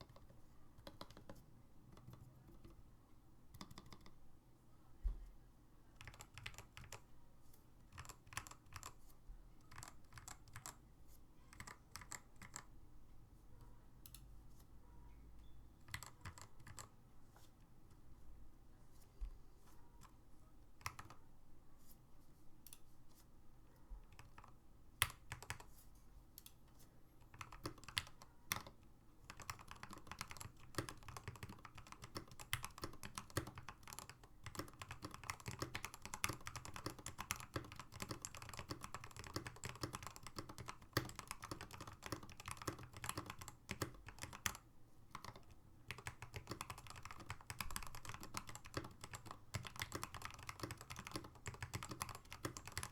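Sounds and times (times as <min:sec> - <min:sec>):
mechanical keyboard typing: 0:00.0 - 0:01.4, 0:03.5 - 0:04.2, 0:06.0 - 0:07.0, 0:07.9 - 0:09.0, 0:09.6 - 0:10.8, 0:11.5 - 0:12.7, 0:15.8 - 0:16.9, 0:20.8 - 0:21.2, 0:24.1 - 0:25.7, 0:27.2 - 0:52.9.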